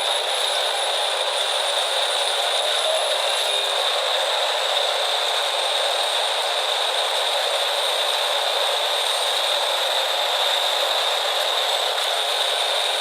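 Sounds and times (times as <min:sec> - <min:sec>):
machinery running with high hiss: 0:00.0 - 0:13.0.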